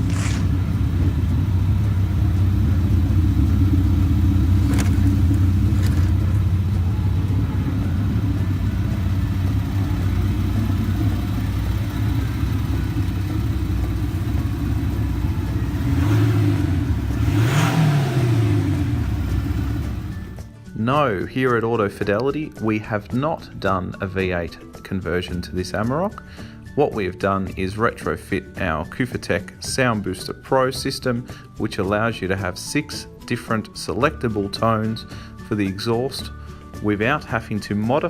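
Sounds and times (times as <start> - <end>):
pickup engine idling and revving: 0.0 - 20.5.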